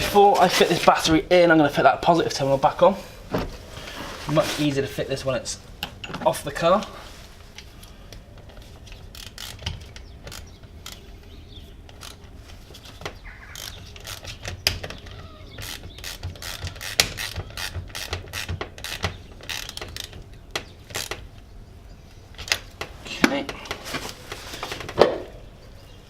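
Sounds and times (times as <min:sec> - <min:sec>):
socket wrench clicking: 0:13.5 - 0:21.2.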